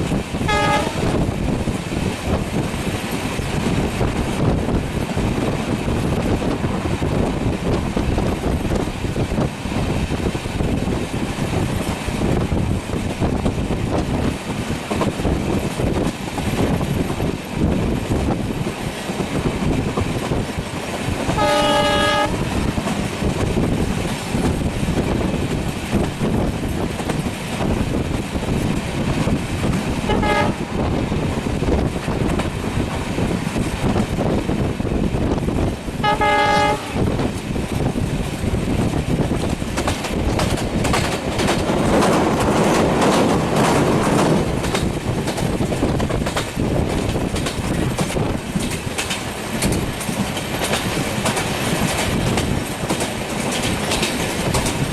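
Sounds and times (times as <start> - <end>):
train wheels rumbling on rails: 0.0 - 54.9
train horn: 0.4 - 1.2, 21.4 - 22.5, 30.1 - 30.7, 36.0 - 37.1.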